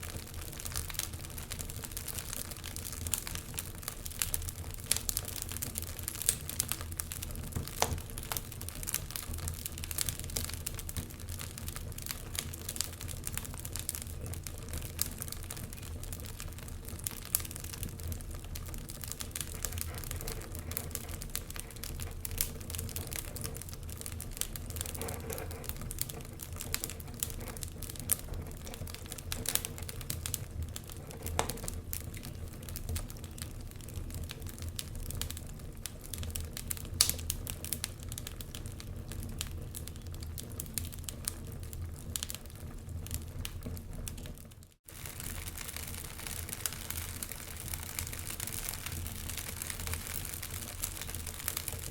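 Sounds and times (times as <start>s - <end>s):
wood fire crackling: 0.0s - 51.9s.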